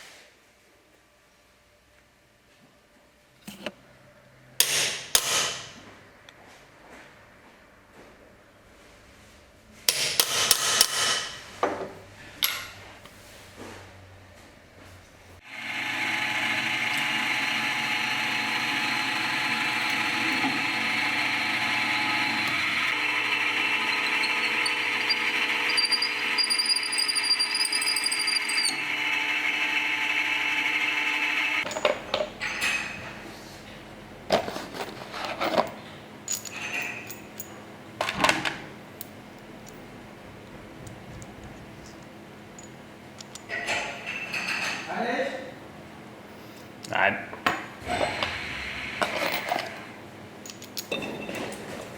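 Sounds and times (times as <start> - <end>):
power tool running: 15.4 - 31.7
high squeal: 19.8 - 28.8.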